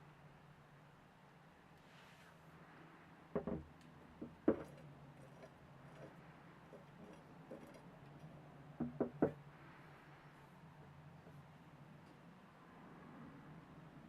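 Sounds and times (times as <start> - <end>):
hard objects knocking: 3.4 - 8.2, 8.8 - 9.4.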